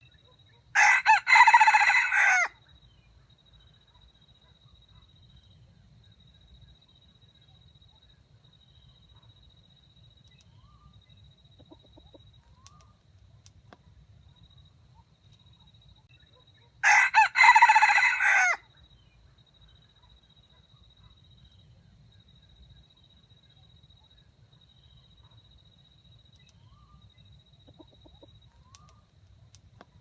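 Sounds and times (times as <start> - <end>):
rooster crowing: 0.8 - 2.6, 16.8 - 18.6.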